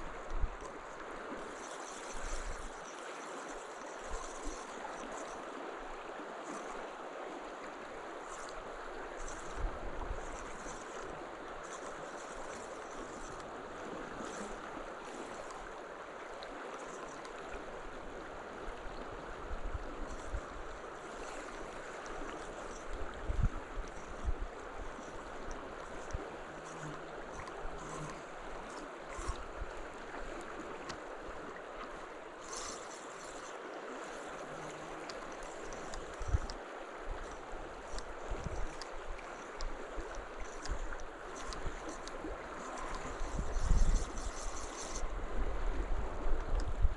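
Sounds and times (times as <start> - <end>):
flowing water: 0.0 - 46.9.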